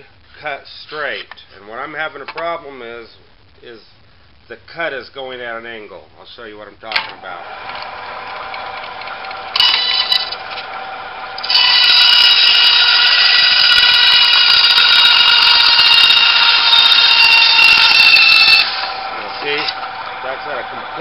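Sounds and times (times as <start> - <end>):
bandsaw whining: 7.4 - 21.0
bandsaw blade cutting wood: 8.8 - 20.6.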